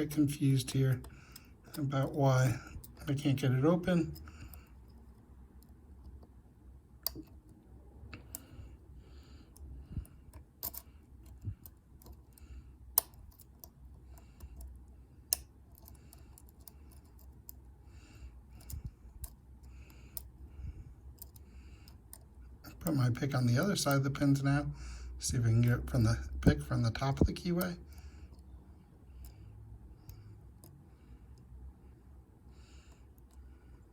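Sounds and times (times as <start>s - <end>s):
lock pick clicking and scraping: 9.5s - 17.7s, 18.5s - 20.4s, 21.0s - 22.6s.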